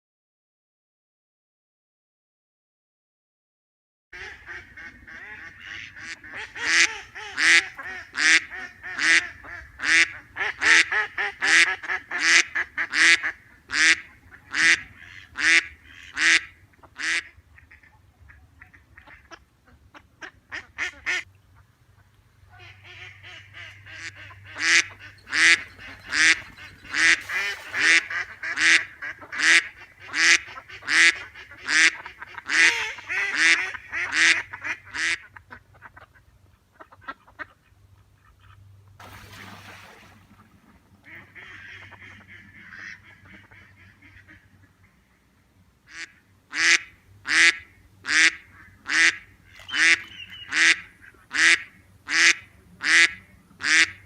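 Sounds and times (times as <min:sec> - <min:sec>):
duck quacking loudly: 0:04.2 - 0:17.9, 0:22.5 - 0:36.1, 0:45.9 - 0:54.0.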